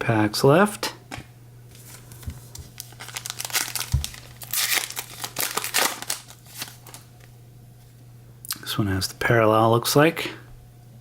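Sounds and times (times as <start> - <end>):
foil wrapper crinkling: 1.7 - 7.3.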